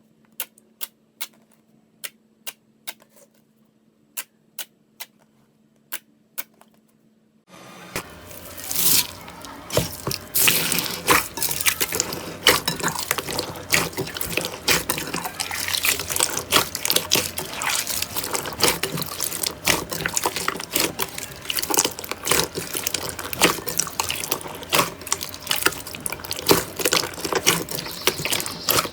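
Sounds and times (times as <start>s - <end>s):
slime squished by hand: 8.0s - 28.9s.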